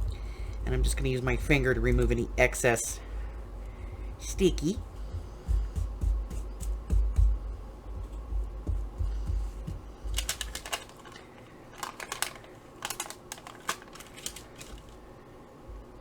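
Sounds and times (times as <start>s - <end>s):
soft bumps: 3.0s - 11.2s
tissue paper crinkling: 10.1s - 15.0s.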